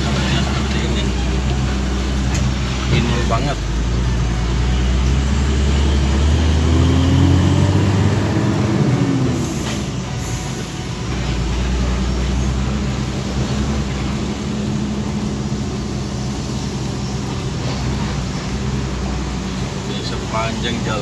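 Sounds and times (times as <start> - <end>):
truck engine revving: 0.0 - 21.0.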